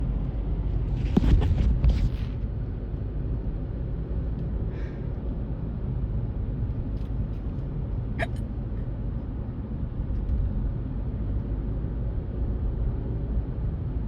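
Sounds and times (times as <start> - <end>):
car road and engine rumble: 0.0 - 14.0.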